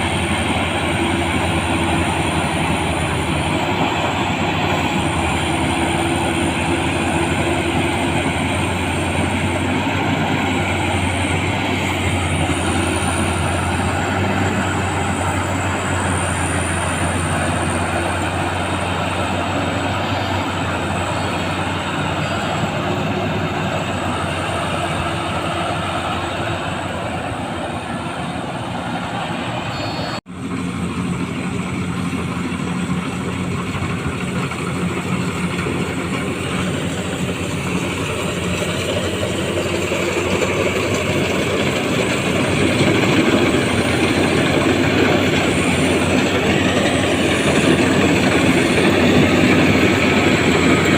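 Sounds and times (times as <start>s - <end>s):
faint high whine: 0.0s - 30.2s
combine harvester engine drone: 0.0s - 50.9s.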